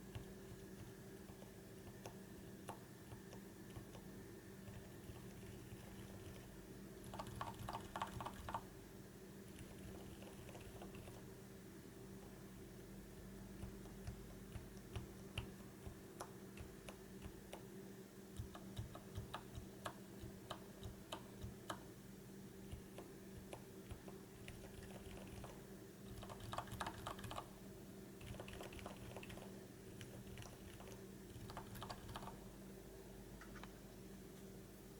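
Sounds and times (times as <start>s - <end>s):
keyboard keys clicking: 22.7s - 27.5s, 28.2s - 32.4s.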